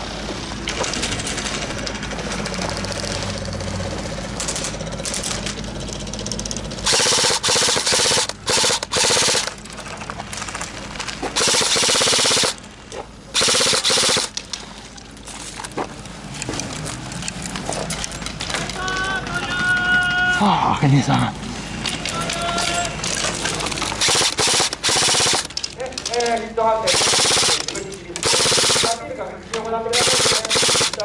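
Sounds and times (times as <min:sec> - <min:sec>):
airsoft gun automatic bursts: 0:06.8 - 0:09.6, 0:11.3 - 0:12.6, 0:13.3 - 0:14.4, 0:24.0 - 0:29.1, 0:29.9 - 0:31.0.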